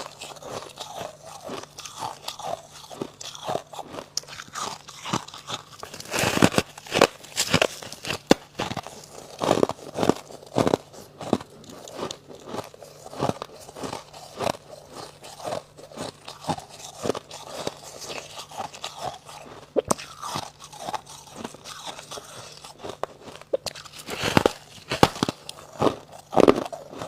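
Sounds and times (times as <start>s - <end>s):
crunching and chewing frost: 0.0s - 27.0s.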